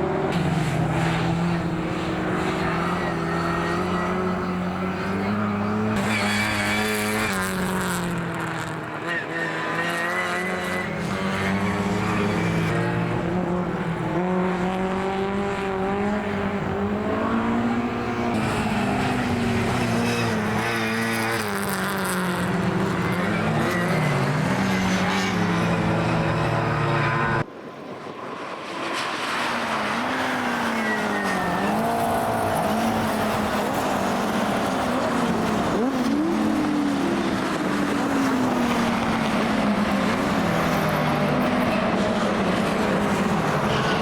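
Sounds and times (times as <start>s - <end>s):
car engine revving: 0.0s - 27.5s
racing car engines running hard: 0.0s - 44.0s.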